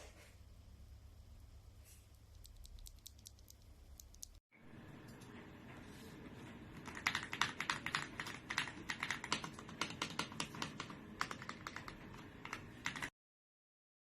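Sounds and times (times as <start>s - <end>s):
fast mechanical keyboard typing: 6.8s - 13.1s.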